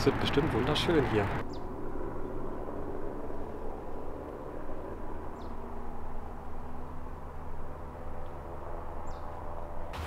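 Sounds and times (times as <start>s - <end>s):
bird chirp: 9.0s - 9.4s.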